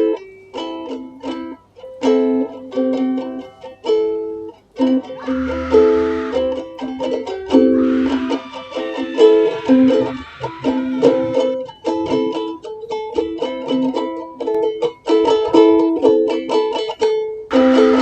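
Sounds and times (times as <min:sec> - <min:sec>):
plucked string music: 0:00.0 - 0:18.0
hissing: 0:05.2 - 0:12.3.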